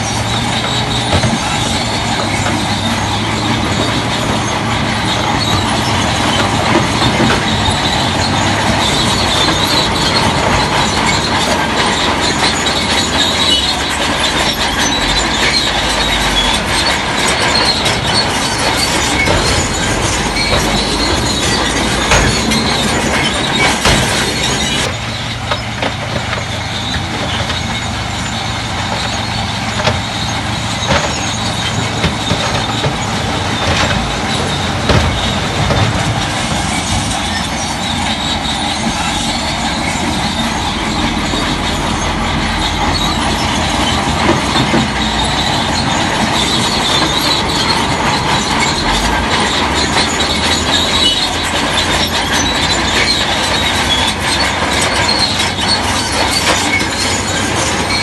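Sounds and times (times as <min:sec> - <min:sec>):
diesel engine running: 0:00.0 - 0:58.0
steel tracks clanking and squealing: 0:00.0 - 0:58.0.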